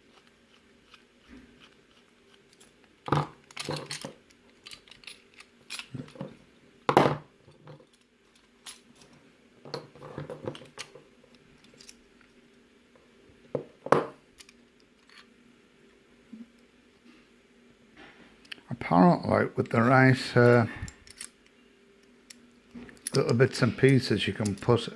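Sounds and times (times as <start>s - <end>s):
metal padlock parts clinking: 3.5s - 6.2s.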